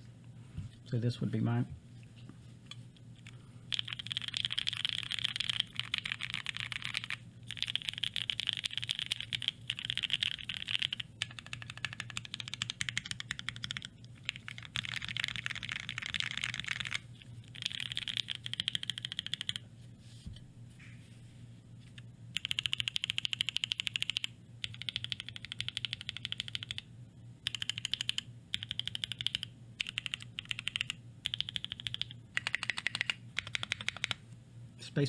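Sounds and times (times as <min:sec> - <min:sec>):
fast typing on mechanical keyboard: 0:03.7 - 0:19.6, 0:22.4 - 0:26.8, 0:27.4 - 0:34.2.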